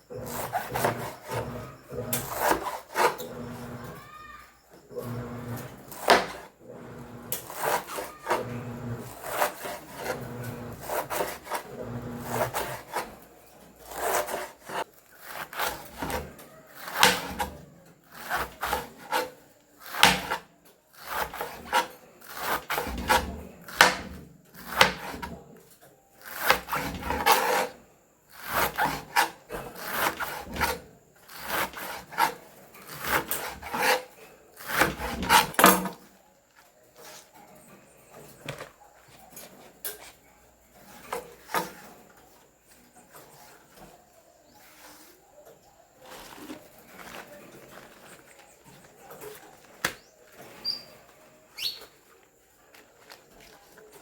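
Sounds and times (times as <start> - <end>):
knife slicing greens on cutting board: 0.2 - 3.2, 5.6 - 6.5, 7.3 - 13.2, 13.8 - 25.4, 26.2 - 27.7, 28.3 - 35.9.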